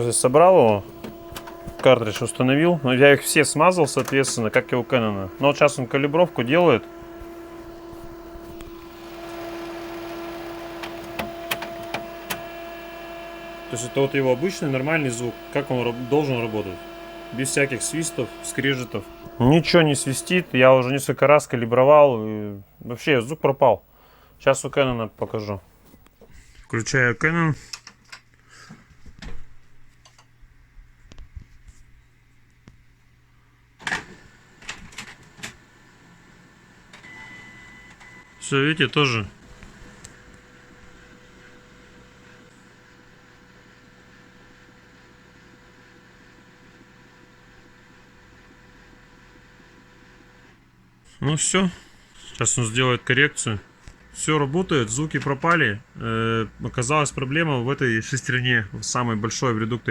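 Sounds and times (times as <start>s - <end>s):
faint printer clicks: 0.0s - 21.2s, 33.8s - 35.7s
printer mechanism clacking: 0.0s - 21.5s
printer motor hum: 0.0s - 26.4s, 33.8s - 59.9s
printer whir: 0.0s - 26.4s, 33.8s - 59.9s.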